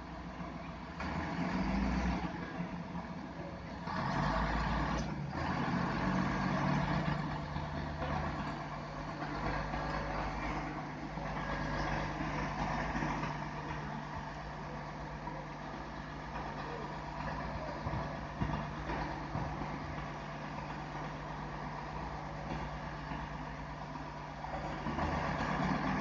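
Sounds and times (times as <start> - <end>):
heavy truck engines running: 0.0 - 26.0.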